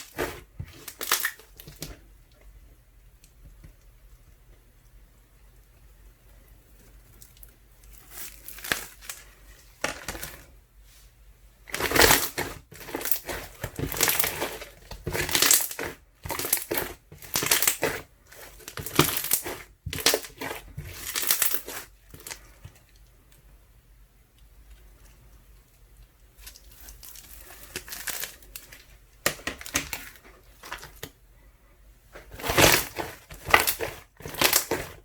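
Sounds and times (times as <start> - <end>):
slime crunchy squishes: 0.0 - 2.0, 7.1 - 10.5, 11.6 - 23.0, 26.3 - 31.2, 32.1 - 35.0.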